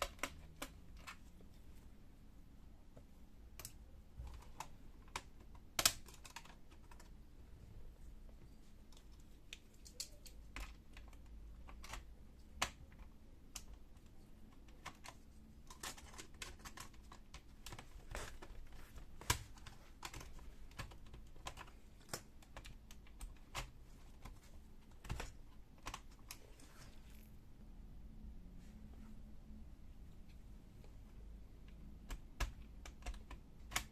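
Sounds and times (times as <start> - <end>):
plastic and metal parts clicking: 3.6 - 7.2, 8.9 - 26.7.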